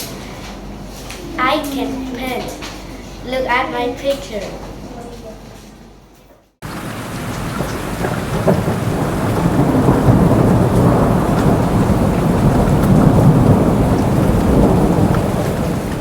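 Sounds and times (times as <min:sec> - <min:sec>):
heavy rain: 0:06.6 - 0:16.0
rolling thunder: 0:06.6 - 0:16.0.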